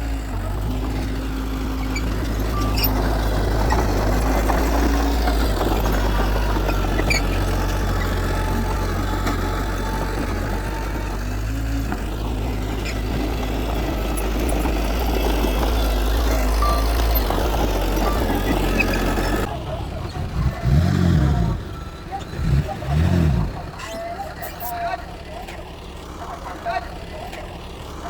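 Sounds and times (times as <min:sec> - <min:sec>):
diesel machinery engine rumble: 0:00.0 - 0:28.0.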